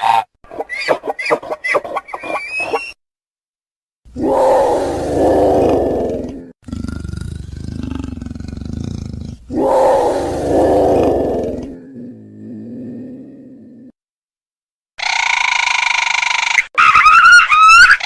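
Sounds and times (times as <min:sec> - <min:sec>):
dinosaur roar: 0:04.1 - 0:13.9
low steady growl: 0:04.2 - 0:13.9.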